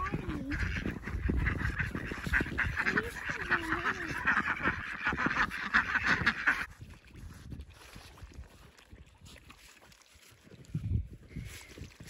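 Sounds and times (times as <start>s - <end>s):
ducks quacking: 0.0s - 6.7s.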